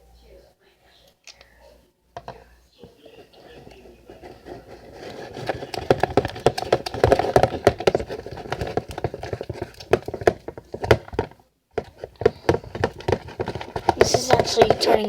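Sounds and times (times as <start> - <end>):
slime stirred sticky squishes: 3.2 - 11.2, 11.8 - 15.0.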